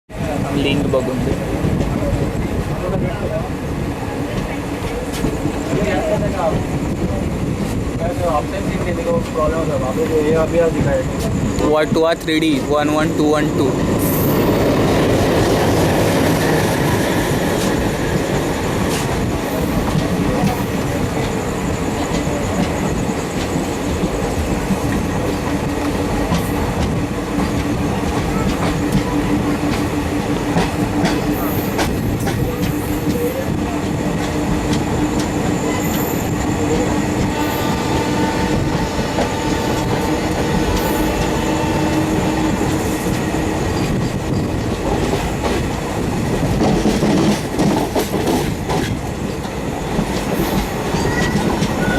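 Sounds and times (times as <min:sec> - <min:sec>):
train coaches rumbling past: 0:00.1 - 0:51.9
faint wheel squeal: 0:51.0 - 0:51.9.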